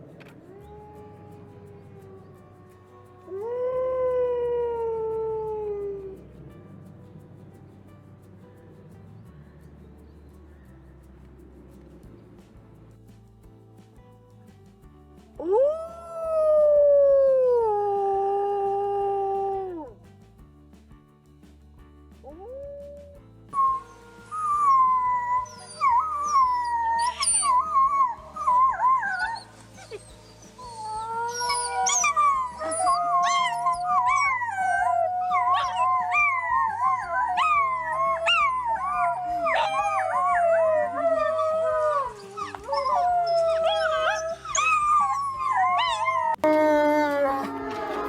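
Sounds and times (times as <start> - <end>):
wolf yips: 23.6 - 46.4
wolves howling in chorus: 23.6 - 46.6.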